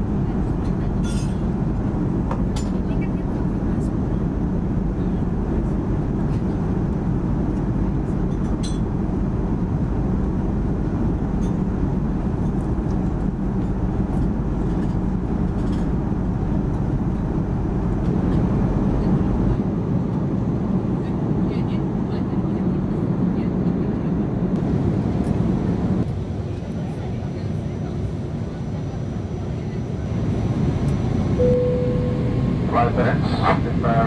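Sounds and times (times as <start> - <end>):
airliner cabin rumble: 0.0 - 34.0.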